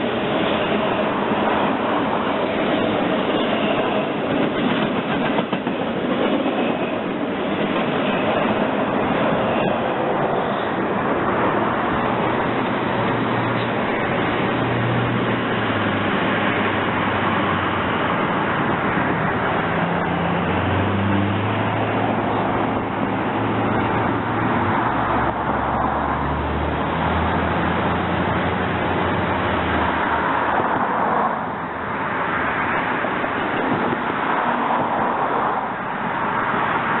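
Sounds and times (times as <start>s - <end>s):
train wheels rumbling on rails: 0.0s - 37.0s.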